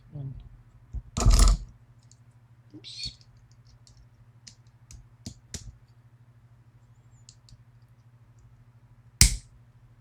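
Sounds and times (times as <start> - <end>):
sharp loud tool click: 9.2 - 9.4.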